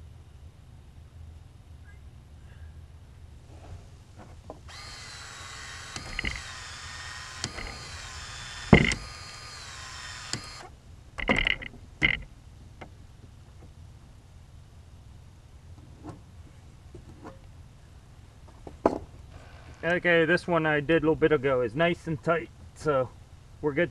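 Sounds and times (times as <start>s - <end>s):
expansion tool motor whine: 4.7s - 12.2s
sharp clicks: 4.7s - 12.3s
knocks: 8.7s - 9.1s, 11.2s - 12.2s.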